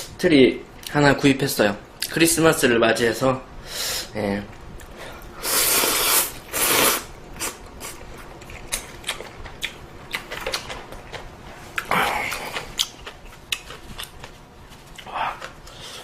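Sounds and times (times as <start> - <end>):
person chewing food: 4.8 - 16.0.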